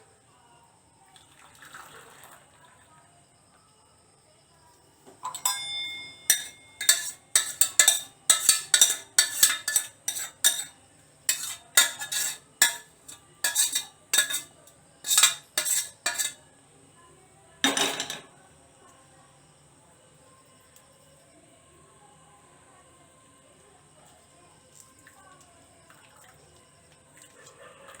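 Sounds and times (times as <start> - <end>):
ringing metal strike: 5.2 - 8.0
dishes clattering: 5.2 - 16.4, 17.6 - 18.3
spoon clinking in a cup: 5.2 - 16.4, 17.6 - 18.3.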